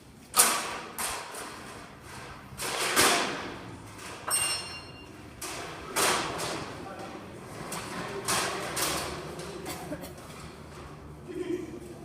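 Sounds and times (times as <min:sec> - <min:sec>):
sharp knocks and clanks: 0:00.3 - 0:11.1
high metallic ring: 0:04.3 - 0:05.2.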